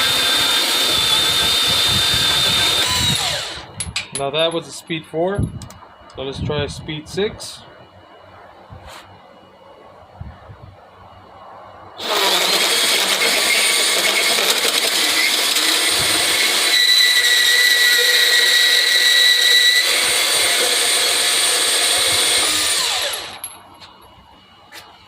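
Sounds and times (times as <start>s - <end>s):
band saw running: 0.0s - 3.7s, 12.0s - 23.6s.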